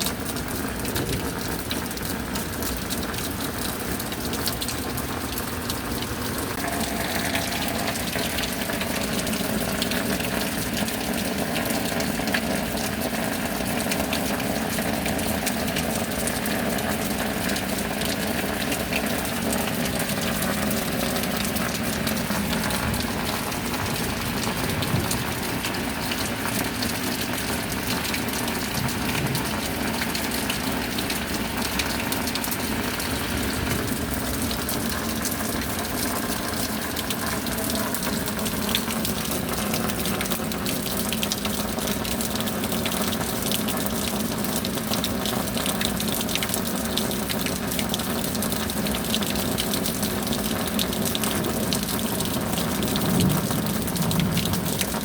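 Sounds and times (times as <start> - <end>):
steady rain: 0.0 - 55.0
water running and gushing: 0.0 - 55.0.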